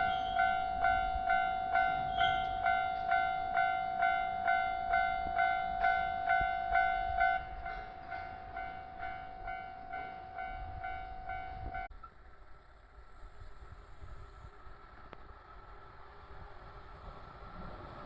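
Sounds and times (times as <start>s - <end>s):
level-crossing alarm bell ringing: 0.0s - 11.9s
train rumbling past: 0.0s - 18.0s.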